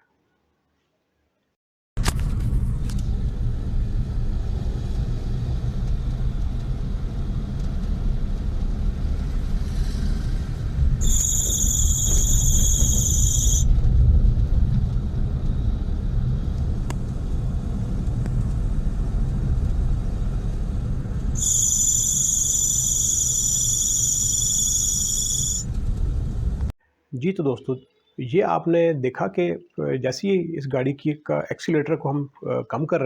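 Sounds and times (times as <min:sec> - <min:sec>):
car engine rumble: 0:02.0 - 0:11.0
alternator belt squealing: 0:11.0 - 0:13.7, 0:21.4 - 0:25.7.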